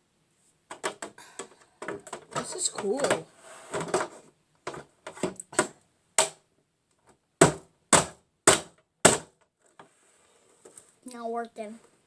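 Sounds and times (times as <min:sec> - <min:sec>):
hammer striking plastic table: 0:04.7 - 0:06.4, 0:07.4 - 0:09.4.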